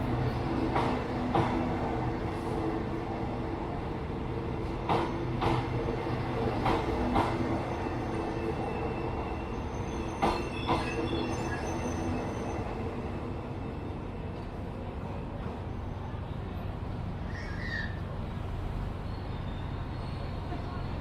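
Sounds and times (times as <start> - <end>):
low train rumble: 0.0 - 21.0
faint high wheel squeal: 7.6 - 13.0, 17.3 - 21.0.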